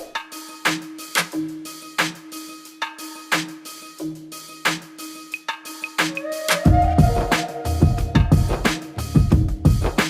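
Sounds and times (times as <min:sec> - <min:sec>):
steady drum beat: 0:00.0 - 0:10.0
held low note: 0:06.2 - 0:08.7.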